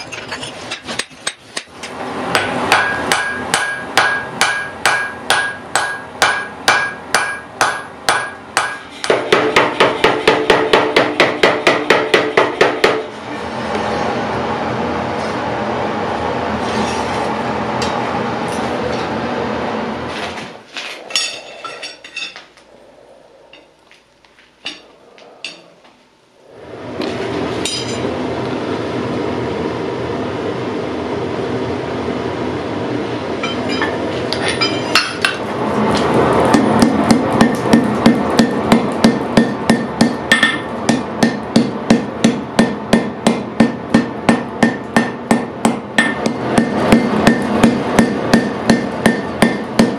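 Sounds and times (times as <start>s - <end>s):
hammer striking steel: 0.7s - 13.1s, 33.4s - 35.4s, 36.5s - 49.9s.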